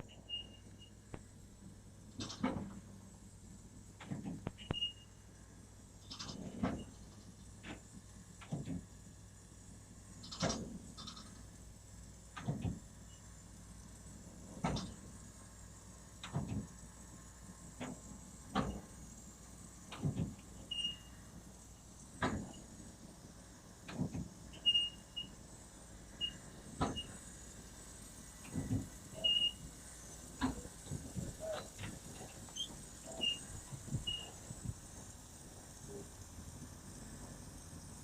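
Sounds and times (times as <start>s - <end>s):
tram wheels knocking on rails: 19.9s - 20.6s, 28.4s - 35.8s
wheel squeaks: 31.4s - 34.4s.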